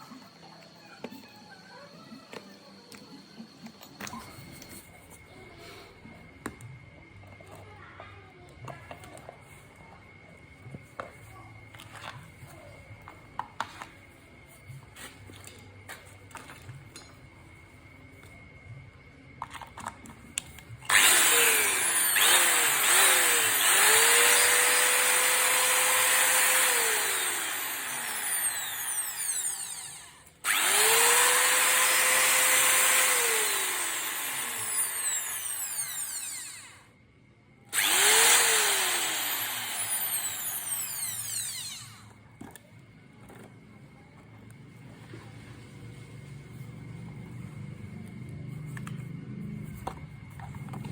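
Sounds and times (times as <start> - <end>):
electric grinder whining: 20.9 - 36.9, 37.7 - 42.2.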